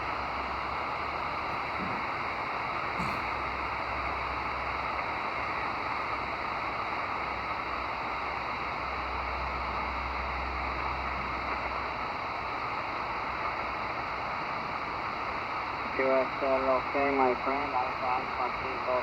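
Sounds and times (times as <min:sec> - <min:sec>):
radio hiss and static: 0:00.0 - 0:08.8, 0:14.4 - 0:19.0.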